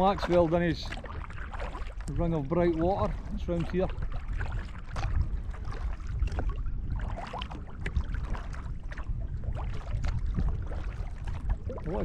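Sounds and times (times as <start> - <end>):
low rumble: 0.0 - 12.0
paddle splashing water: 0.0 - 12.0
water lapping against hull: 0.0 - 12.0.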